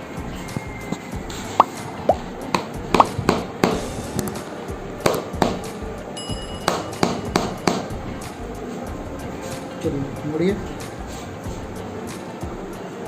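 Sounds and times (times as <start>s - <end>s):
background music: 0.0s - 13.0s
massage hammer knocking: 0.6s - 8.2s.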